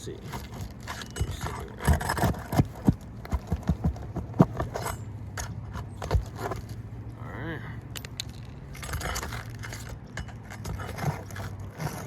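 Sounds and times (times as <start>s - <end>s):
tool prying roofing nails: 0.3s - 5.0s.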